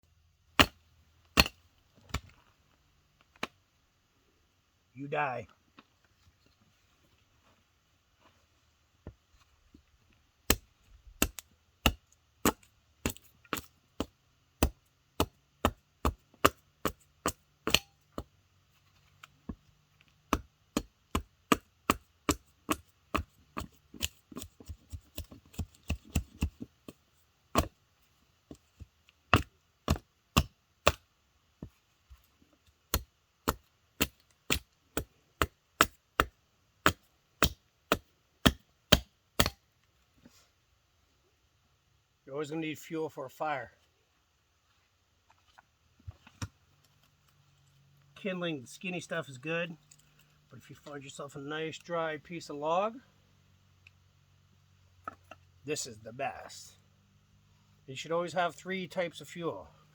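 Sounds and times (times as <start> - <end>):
wood chopping: 0.6 - 2.3, 10.5 - 18.3, 20.3 - 27.7, 28.8 - 31.0, 32.9 - 39.6.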